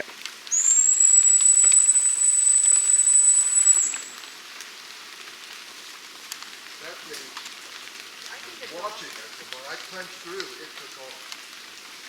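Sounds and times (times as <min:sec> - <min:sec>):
faint rain patter: 0:00.0 - 0:12.0
high-pitched whistle: 0:00.5 - 0:04.3.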